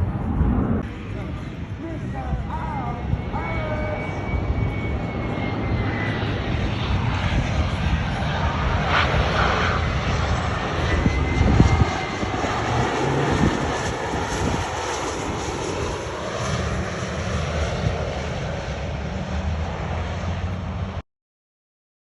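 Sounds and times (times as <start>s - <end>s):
faint high engine whine: 0.0s - 21.0s
jet engines rushing roar: 0.0s - 21.0s.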